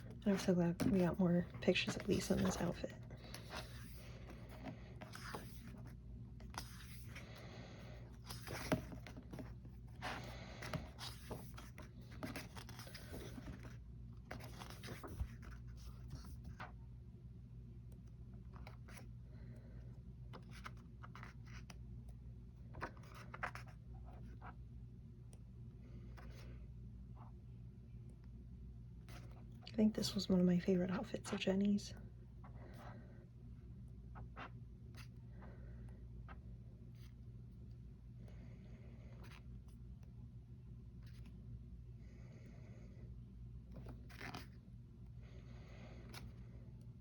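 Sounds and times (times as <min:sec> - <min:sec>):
low steady hum: 0:00.0 - 0:47.0
book pages turning: 0:00.1 - 0:07.4, 0:08.1 - 0:16.8, 0:22.7 - 0:24.6, 0:43.7 - 0:44.6.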